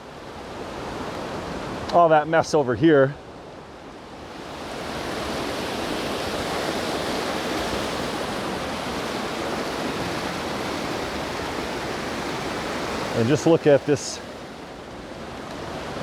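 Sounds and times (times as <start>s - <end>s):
creek water rushing over rocks: 3.9s - 16.0s.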